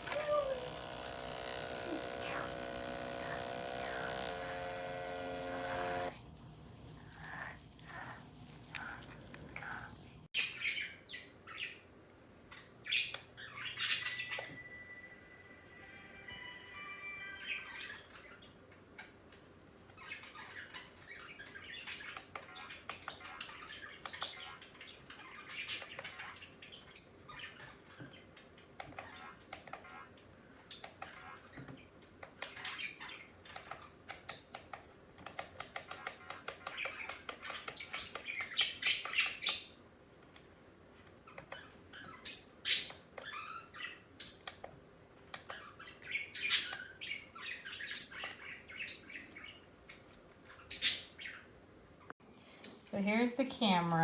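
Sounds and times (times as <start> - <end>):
faint steady hum: 0.0 - 10.3
bird chirping and squawking: 45.4 - 51.5.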